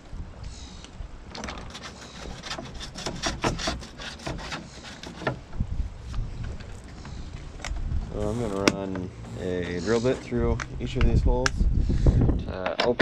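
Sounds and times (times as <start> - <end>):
hand tools clicking and knocking: 1.3 - 5.6, 6.5 - 11.6, 12.6 - 13.0
dull thumps: 1.3 - 11.6.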